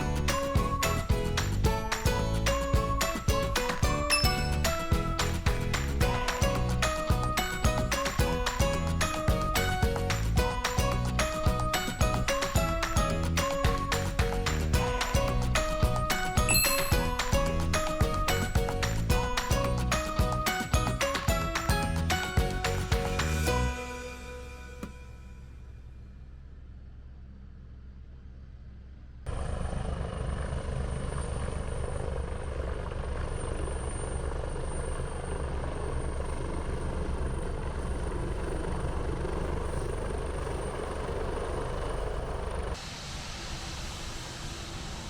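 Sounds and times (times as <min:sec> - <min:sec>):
music with steady beat: 0:00.0 - 0:25.1.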